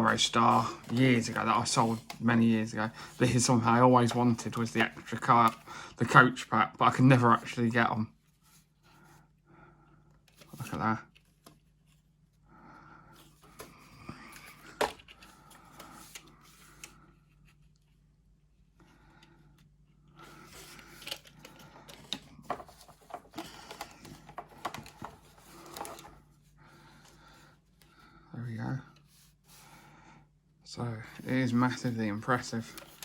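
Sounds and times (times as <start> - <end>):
plastic packaging rustling: 20.6 - 26.2, 32.4 - 33.0.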